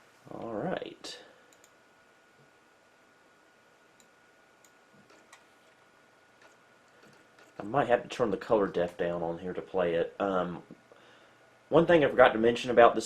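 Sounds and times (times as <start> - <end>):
faint high whine: 0.0 - 13.0
faint clicks: 1.5 - 1.8.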